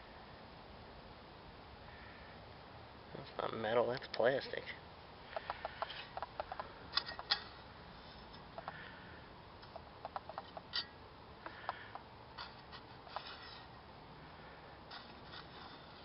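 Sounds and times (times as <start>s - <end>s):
clicks and crackles of soil: 5.3s - 8.8s, 9.6s - 13.8s.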